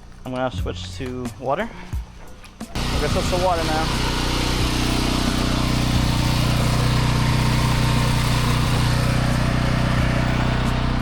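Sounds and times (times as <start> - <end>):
gas engine running: 2.8 - 11.0.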